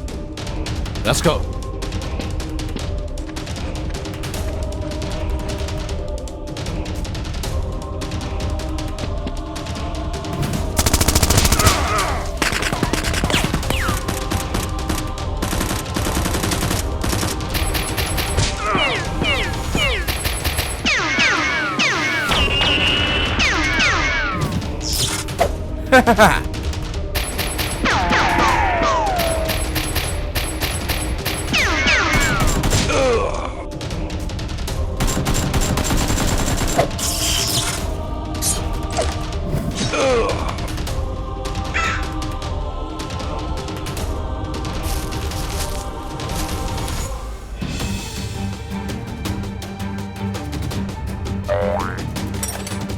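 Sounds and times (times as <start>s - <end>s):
action background music: 0.0s - 52.9s
rapid automatic gunfire: 10.4s - 18.4s, 29.2s - 32.9s, 35.0s - 37.1s
gunfire bursts: 10.4s - 24.0s
sweeping whistle-like tones: 18.6s - 25.2s.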